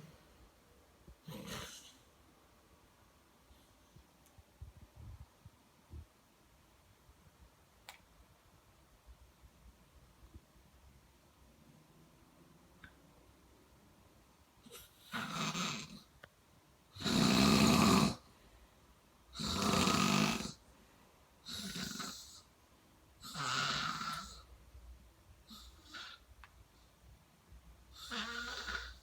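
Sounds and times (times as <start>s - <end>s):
person snoring: 1.2s - 2.0s, 14.7s - 16.0s, 17.0s - 18.2s, 19.4s - 20.6s, 21.4s - 22.5s, 23.2s - 24.4s, 28.0s - 29.0s.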